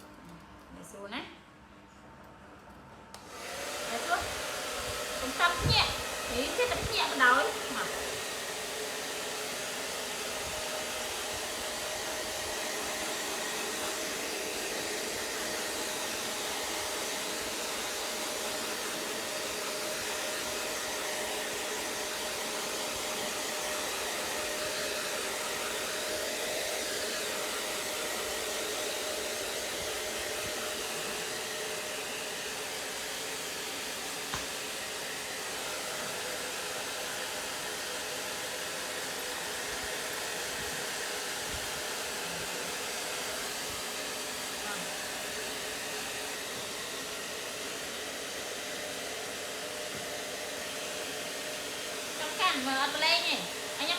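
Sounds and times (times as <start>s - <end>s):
hair dryer blowing: 3.1s - 53.9s.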